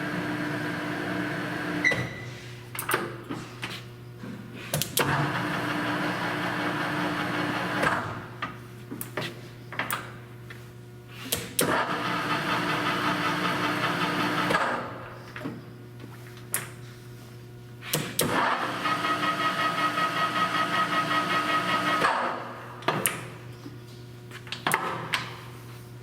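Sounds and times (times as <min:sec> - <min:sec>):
lathe gear train running: 0:11.9 - 0:14.5, 0:18.4 - 0:22.0.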